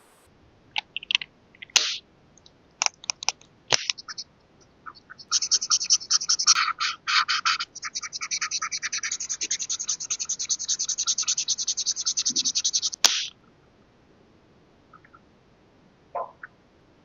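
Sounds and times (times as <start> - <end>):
scratchy strokes across paper: 8.1 - 13.0.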